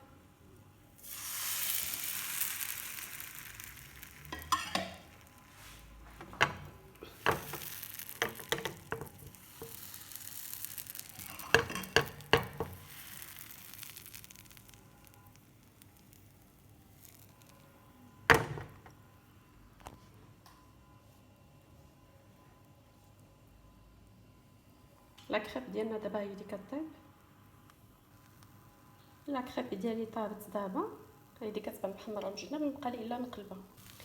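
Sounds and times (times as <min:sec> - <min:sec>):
batter sizzling in a hot pan: 0:00.9 - 0:18.8, 0:28.0 - 0:34.0.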